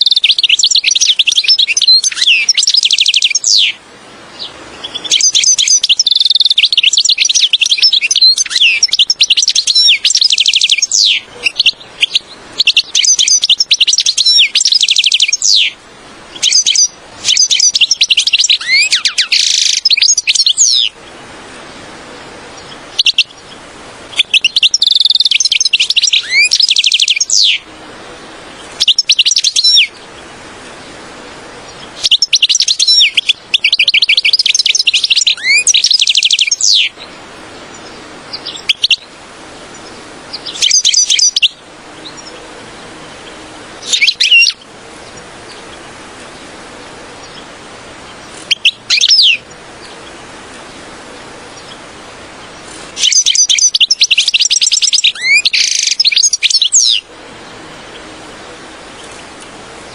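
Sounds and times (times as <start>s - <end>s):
goldfinch twittering trills: 0.0s - 3.8s, 4.4s - 21.0s, 22.5s - 27.6s, 28.6s - 30.3s, 31.7s - 42.4s, 43.2s - 45.8s, 48.1s - 50.7s, 52.4s - 57.0s
steady low hiss: 0.0s - 59.9s.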